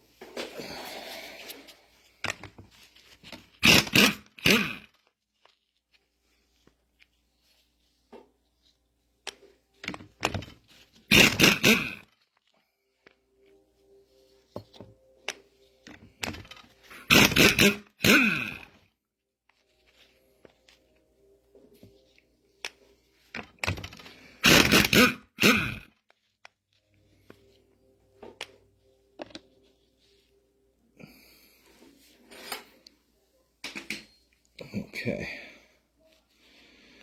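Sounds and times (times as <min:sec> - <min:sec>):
small metal parts clicking and knocking: 0:02.2 - 0:05.8, 0:09.2 - 0:13.2, 0:14.6 - 0:17.9, 0:22.6 - 0:25.0.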